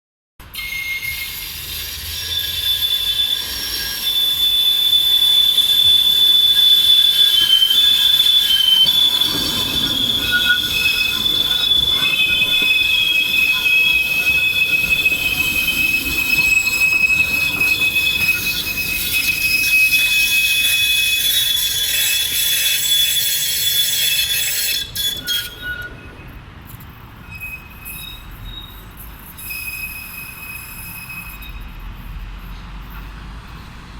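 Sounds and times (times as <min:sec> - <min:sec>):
train wheels squealing: 0:00.4 - 0:33.9
faint squeaks: 0:06.0 - 0:26.4.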